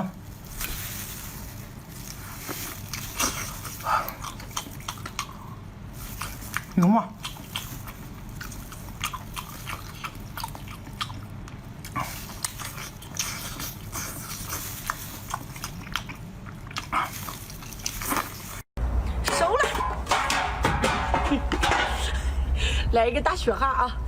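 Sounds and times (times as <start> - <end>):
biting and chewing: 0.4 - 18.6.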